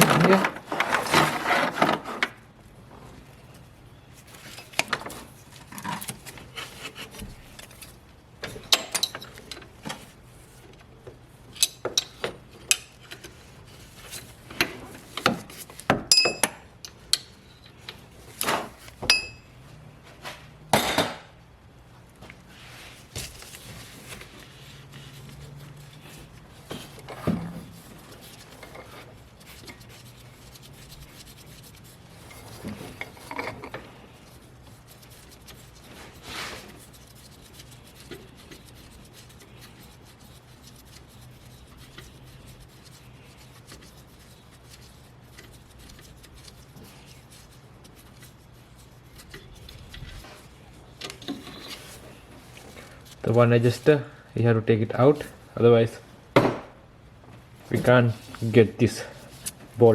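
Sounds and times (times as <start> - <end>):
metal tools clinking on engine parts: 8.6 - 9.6, 16.1 - 16.6, 19.0 - 19.5.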